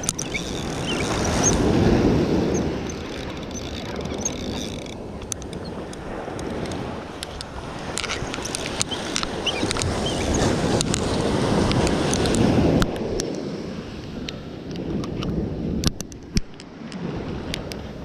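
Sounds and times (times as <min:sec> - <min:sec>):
faint ticks: 0:00.0 - 0:01.6, 0:02.5 - 0:13.4
ocean surf washing on beach: 0:00.0 - 0:18.0
wind buffeting microphone: 0:00.0 - 0:18.0.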